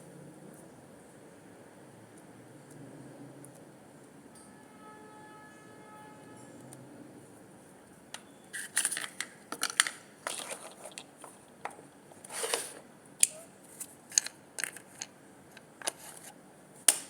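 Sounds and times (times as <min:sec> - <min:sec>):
crinkling rustles: 0:08.5 - 0:12.9.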